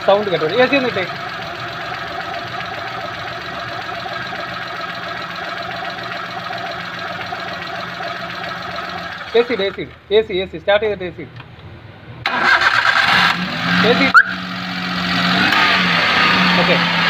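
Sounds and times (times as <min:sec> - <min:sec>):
car engine idling: 0:00.0 - 0:10.0.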